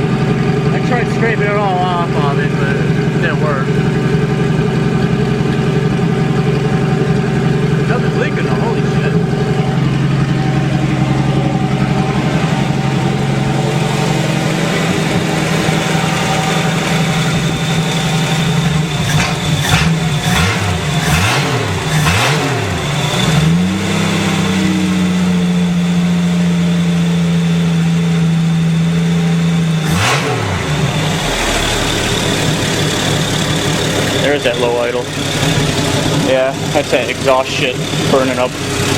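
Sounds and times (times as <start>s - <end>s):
car engine idling and revving: 0.0s - 38.9s.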